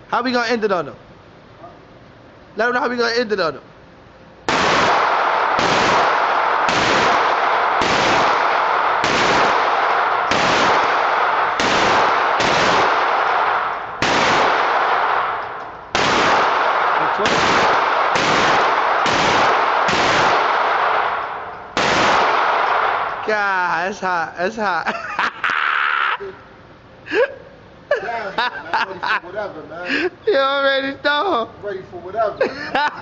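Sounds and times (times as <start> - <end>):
rapid gunfire: 4.5 - 23.2.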